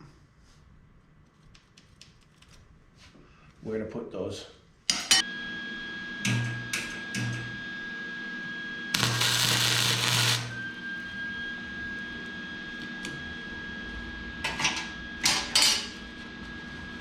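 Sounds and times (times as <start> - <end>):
handheld power tool running: 8.9 - 13.3.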